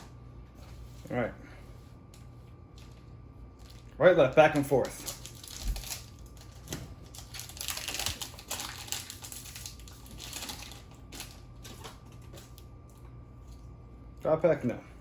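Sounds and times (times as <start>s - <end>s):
foil wrapper crinkling: 2.7s - 12.7s.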